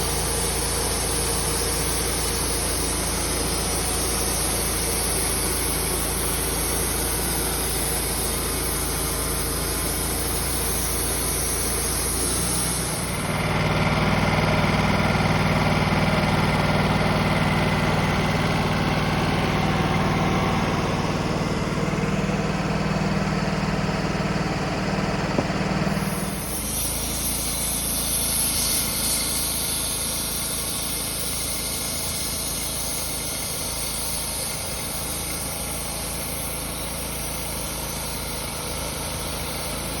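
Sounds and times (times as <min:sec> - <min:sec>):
saw blade cutting log: 0:00.0 - 0:40.0
sawmill engine running: 0:00.0 - 0:40.0.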